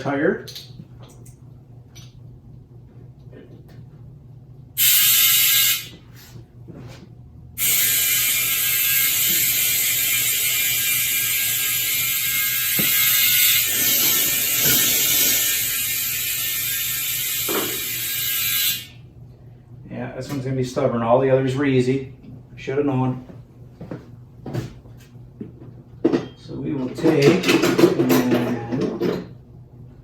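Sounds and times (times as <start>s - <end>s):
compressed air hissing: 4.8s - 5.9s.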